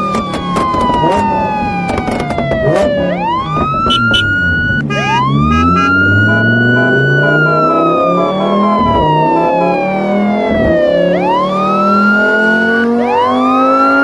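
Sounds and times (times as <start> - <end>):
siren-like synth tone: 0.0 - 14.0
beat and bass: 1.8 - 10.8.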